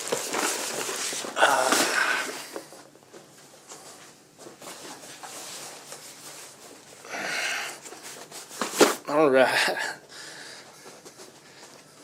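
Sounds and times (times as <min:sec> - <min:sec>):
cardboard boxes rustling and scraping: 0:00.0 - 0:07.0, 0:07.8 - 0:09.0.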